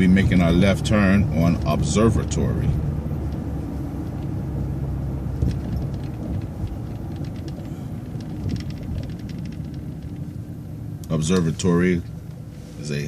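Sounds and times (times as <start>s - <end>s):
bus engine and road rumble: 0.0s - 13.0s
light clicks and rattles: 5.2s - 12.4s.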